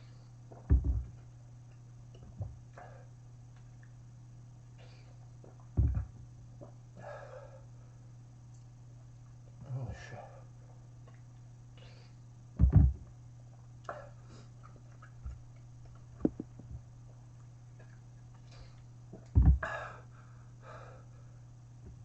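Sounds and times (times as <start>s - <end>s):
loud low thumps: 0.7s - 1.1s, 5.8s - 6.1s, 12.6s - 13.1s, 19.3s - 19.7s
person breathing hard: 7.0s - 7.8s, 19.6s - 21.4s.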